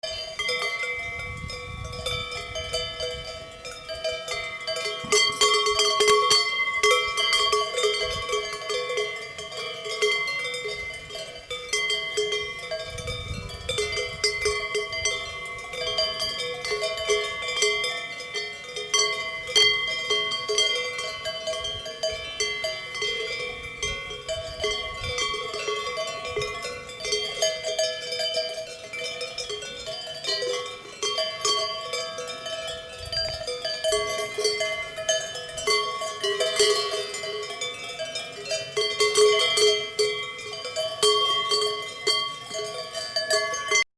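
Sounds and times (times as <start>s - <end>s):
cowbells clanking: 0.0s - 43.9s.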